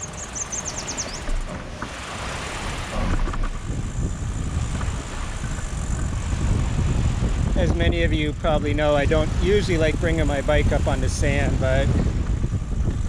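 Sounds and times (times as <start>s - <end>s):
bird chirping: 0.0s - 1.3s
wind buffeting microphone: 0.0s - 13.0s.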